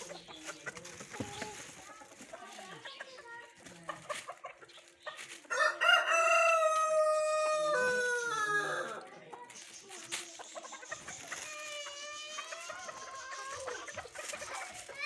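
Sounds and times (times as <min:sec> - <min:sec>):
rooster crowing: 0:05.5 - 0:09.0.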